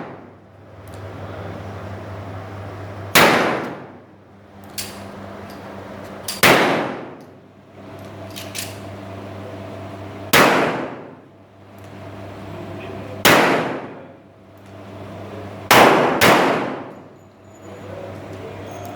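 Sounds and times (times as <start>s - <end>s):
revolver shots with ringing echo: 3.1s - 4.0s, 6.4s - 7.2s, 10.3s - 11.2s, 13.2s - 14.2s, 15.7s - 17.2s.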